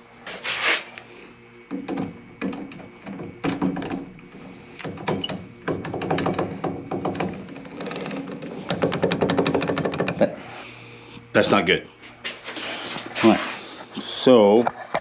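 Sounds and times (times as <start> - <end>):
knocks: 4.9 - 7.9, 8.6 - 10.2
belt grinder clattering rattle: 5.0 - 10.2.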